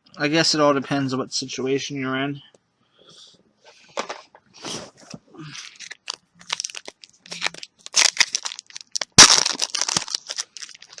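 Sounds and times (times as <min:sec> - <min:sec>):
wrapper crinkling and tearing: 0:05.4 - 0:11.0.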